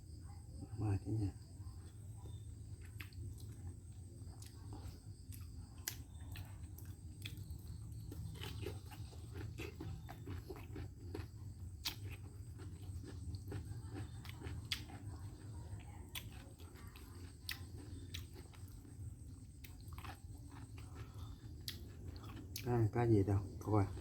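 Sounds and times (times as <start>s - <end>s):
person chewing and crunching: 1.8s - 24.0s.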